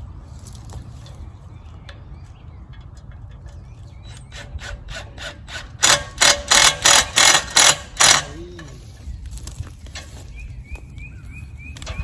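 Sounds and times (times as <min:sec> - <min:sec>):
rhythmic hand tool strokes: 0:04.1 - 0:09.0.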